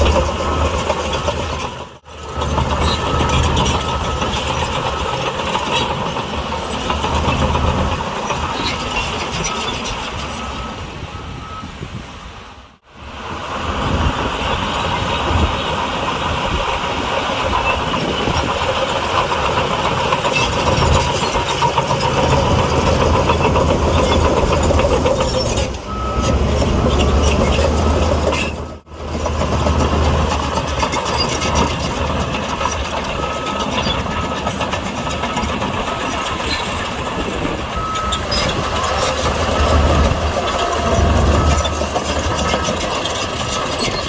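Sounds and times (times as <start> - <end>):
diesel machinery engine droning: 0.0 - 44.0
reversing alarm beeping: 0.1 - 6.1, 6.8 - 11.8, 20.4 - 28.8, 31.1 - 36.1, 37.7 - 44.0.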